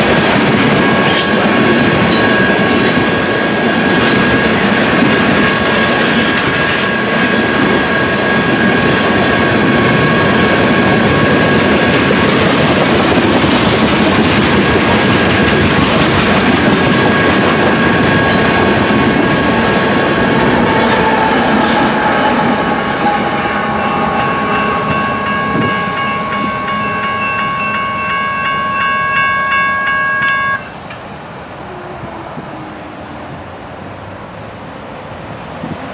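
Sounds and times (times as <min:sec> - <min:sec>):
train wheels clicking over rail joints: 0:09.8 - 0:22.7
high ringing tone: 0:22.9 - 0:30.8.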